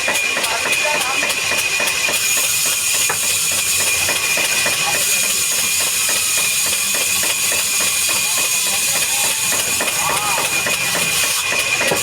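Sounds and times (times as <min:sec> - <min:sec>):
woodworking machine hissing: 0:00.0 - 0:12.0.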